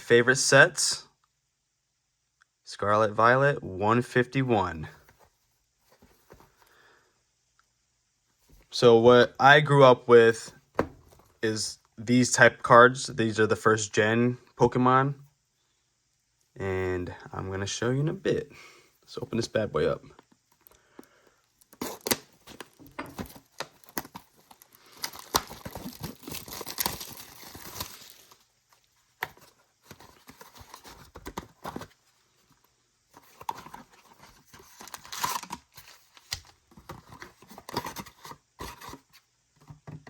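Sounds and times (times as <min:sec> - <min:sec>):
packaging tearing and crinkling: 0:21.7 - 0:28.4, 0:34.6 - 0:36.4.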